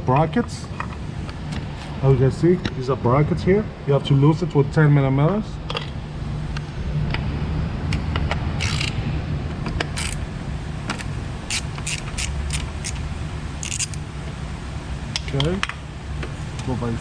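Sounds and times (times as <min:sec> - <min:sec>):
steady low hum: 0:00.0 - 0:17.0
socket ratchet clicking: 0:08.6 - 0:09.0, 0:09.8 - 0:10.2, 0:10.9 - 0:14.0.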